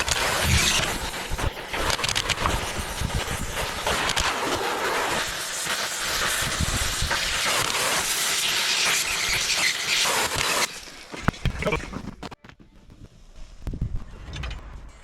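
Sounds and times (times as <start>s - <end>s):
compressed air hissing: 0.0s - 11.0s.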